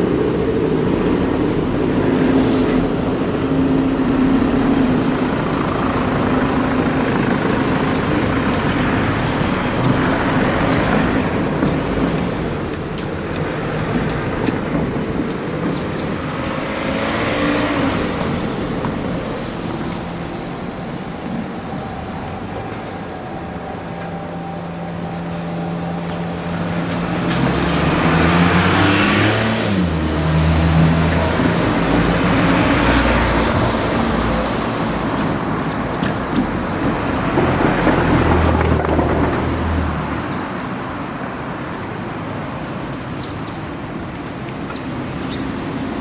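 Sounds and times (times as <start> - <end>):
vehicles passing close by: 0.0 - 46.0.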